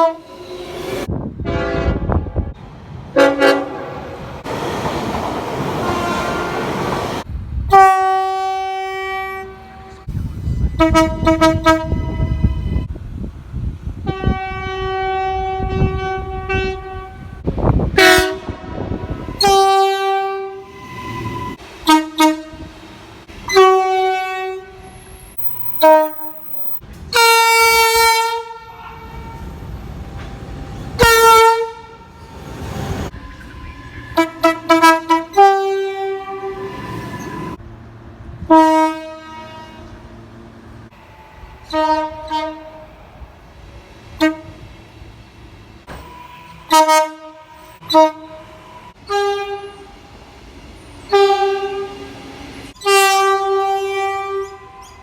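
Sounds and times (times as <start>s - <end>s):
locomotive horn blasts: 0.0s - 0.8s, 1.4s - 2.5s, 3.2s - 4.2s, 5.8s - 6.9s, 7.7s - 12.9s, 14.0s - 22.7s, 23.4s - 29.6s, 31.0s - 32.4s, 33.1s - 37.6s, 38.4s - 40.2s, 41.6s - 42.9s, 44.2s - 44.7s, 46.1s - 50.0s, 51.1s - 52.1s, 52.8s - 55.0s
passing train rumbling: 0.0s - 55.0s.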